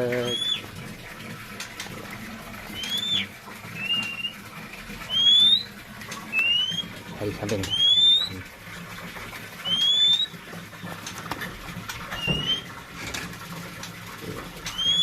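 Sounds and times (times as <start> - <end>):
bird whistling rising notes: 0.2 - 0.6, 2.7 - 4.4, 5.1 - 5.7, 6.3 - 6.9, 7.7 - 8.4, 9.6 - 10.4, 12.2 - 12.7, 14.7 - 15.0.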